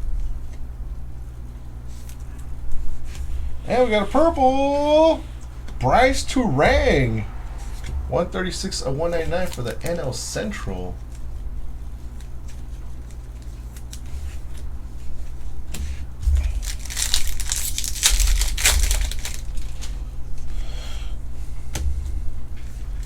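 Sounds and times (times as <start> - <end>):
low hum: 2.0 - 15.3
cards being handled: 12.2 - 19.9
wrapper tearing and crinkling: 16.4 - 19.9.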